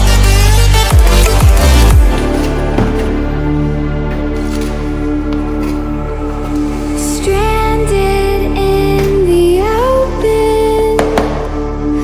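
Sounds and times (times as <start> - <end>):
electronic music with heavy bass: 0.0 - 4.1.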